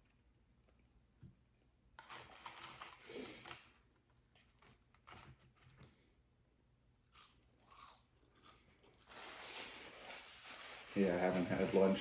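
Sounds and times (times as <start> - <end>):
person chewing: 7.0 - 9.1.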